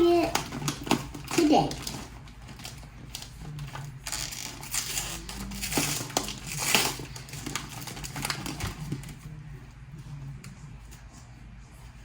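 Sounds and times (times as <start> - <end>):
snack bag crinkling: 0.0 - 9.1.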